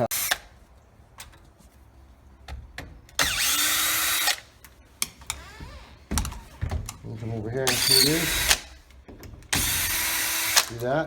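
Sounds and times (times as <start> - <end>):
power drill running: 3.2 - 4.5, 5.3 - 6.0, 7.7 - 8.8, 9.5 - 10.8.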